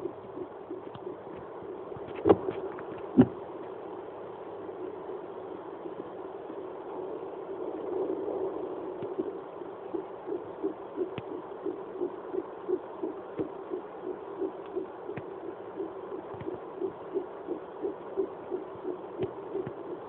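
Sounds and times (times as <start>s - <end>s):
fast fetal heartbeat pulse: 0.0s - 3.4s, 7.5s - 20.0s.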